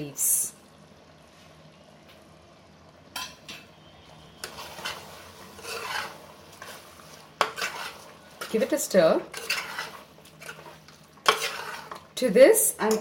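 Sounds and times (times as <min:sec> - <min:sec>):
spoon scraping a pot: 0:04.3 - 0:12.1.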